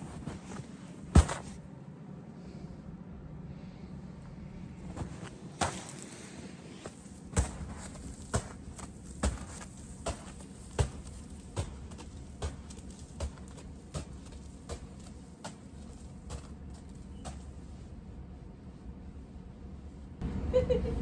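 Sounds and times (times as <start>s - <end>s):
footsteps in snow: 0.0s - 1.6s, 4.8s - 17.9s.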